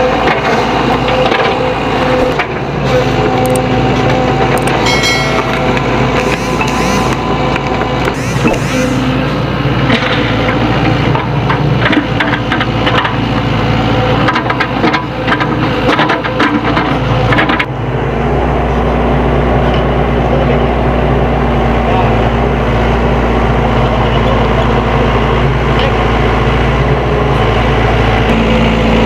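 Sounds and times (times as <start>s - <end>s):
excavator diesel engine running: 0.0s - 29.0s.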